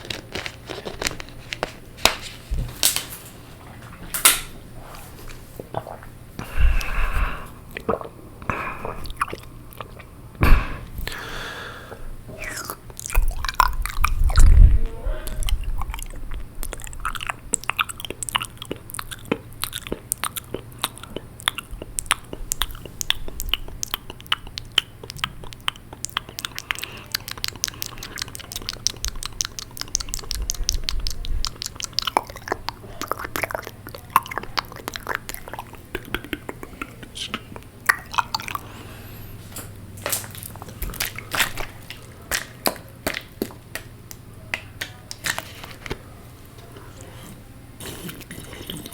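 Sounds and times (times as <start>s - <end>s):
tongue clicks and lip smacks: 12.4s - 38.6s.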